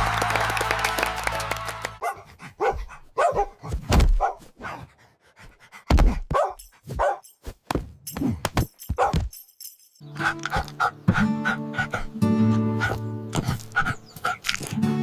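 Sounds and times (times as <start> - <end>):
background music: 0.0 - 2.0, 10.0 - 15.0.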